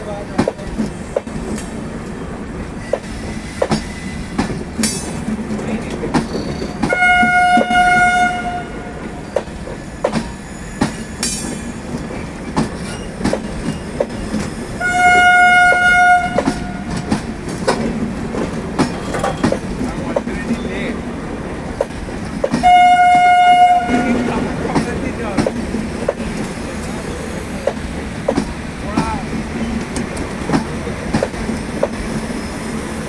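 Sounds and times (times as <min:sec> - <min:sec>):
train running noise: 0:00.0 - 0:33.0
wheels clacking over rail joints: 0:00.0 - 0:33.0
twin-tone locomotive horn: 0:06.8 - 0:09.2, 0:14.8 - 0:17.2, 0:22.6 - 0:24.6.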